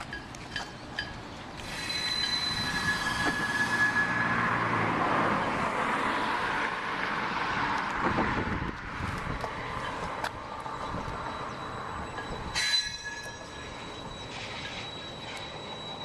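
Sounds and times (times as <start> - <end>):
steel wheels squealing on rails: 0.0 - 5.6, 9.6 - 16.0
railroad cars rolling rumble: 0.0 - 16.0.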